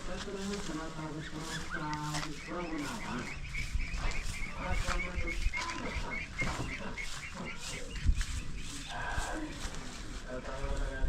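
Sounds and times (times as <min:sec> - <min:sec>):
bird chirping: 0:00.0 - 0:10.7
low wind-like rumble: 0:02.4 - 0:11.0.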